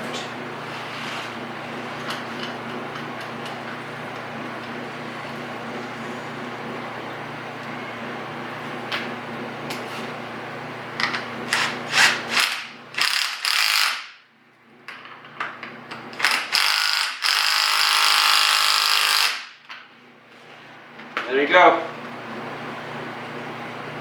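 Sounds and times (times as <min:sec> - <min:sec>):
ratchet clicking: 0:11.5 - 0:14.2, 0:16.2 - 0:19.5.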